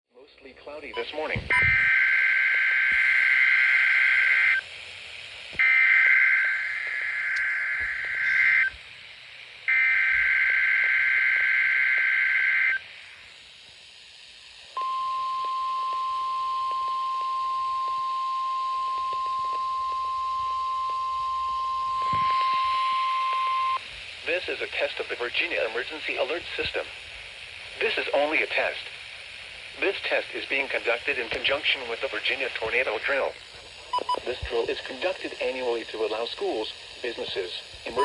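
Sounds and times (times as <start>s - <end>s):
steady attention tone: 0.9s - 4.7s, 5.6s - 13.3s, 14.7s - 23.9s, 29.8s - 36.6s, 37.3s - 38.0s
buzzy digital data tones: 1.0s - 38.0s.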